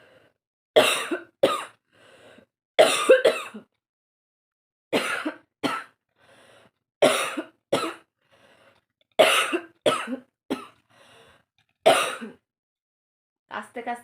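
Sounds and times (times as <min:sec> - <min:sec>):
woman coughing hard: 0:00.8 - 0:01.8, 0:02.8 - 0:03.7, 0:04.9 - 0:06.0, 0:07.0 - 0:08.1, 0:09.2 - 0:10.8, 0:11.9 - 0:12.4.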